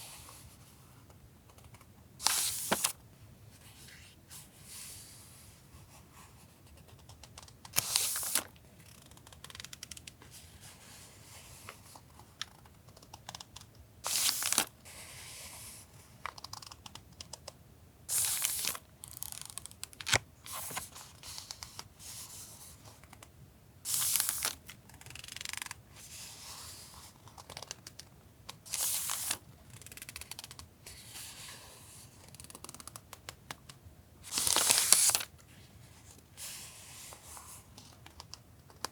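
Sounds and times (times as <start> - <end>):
paper rustling: 2.2 - 3.0, 7.8 - 8.5, 14.1 - 14.7, 18.1 - 21.7, 23.9 - 24.6, 28.7 - 29.4, 34.2 - 35.3.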